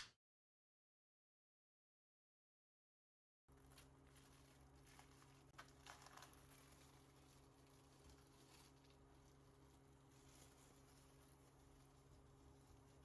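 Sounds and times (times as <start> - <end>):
steady low hum: 3.5 - 13.0.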